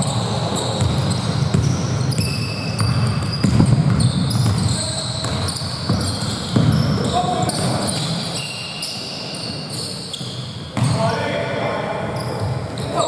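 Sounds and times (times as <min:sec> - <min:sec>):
sneakers squeaking: 0:00.0 - 0:13.0
basketball bouncing on court: 0:00.6 - 0:08.2, 0:10.2 - 0:11.1
players' voices: 0:10.7 - 0:13.0.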